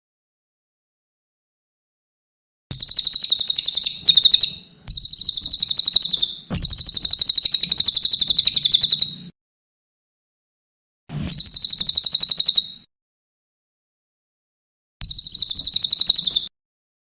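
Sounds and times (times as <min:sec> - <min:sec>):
bird rattling trill: 0:02.7 - 0:09.1, 0:11.3 - 0:12.7, 0:15.0 - 0:16.5.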